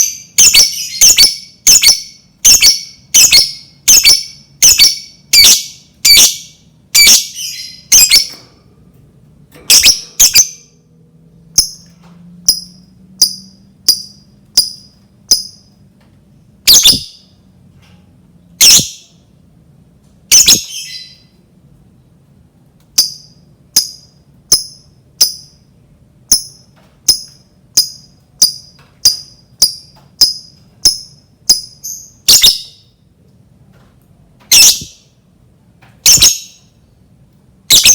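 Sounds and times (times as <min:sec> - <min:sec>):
lovebird shrill calls: 0:00.4 - 0:08.3, 0:16.7 - 0:17.2, 0:18.6 - 0:19.1, 0:20.3 - 0:21.2, 0:27.8 - 0:32.8, 0:34.5 - 0:35.0, 0:36.1 - 0:36.6.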